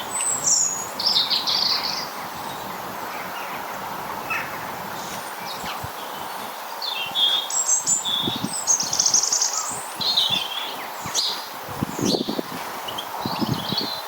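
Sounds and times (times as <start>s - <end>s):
bird trill: 0.0s - 3.6s, 4.2s - 14.0s
outdoor background noise: 0.0s - 14.0s
songbirds chirping and calling: 0.0s - 14.0s.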